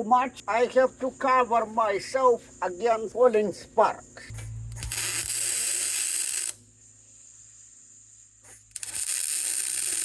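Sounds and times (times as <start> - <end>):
welding arc crackling: 4.3 - 6.6, 8.7 - 10.0.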